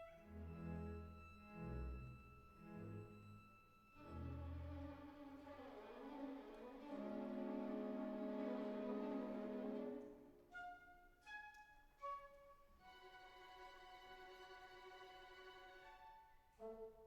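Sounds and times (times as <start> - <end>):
slow bowed string chords: 0.0 - 10.1.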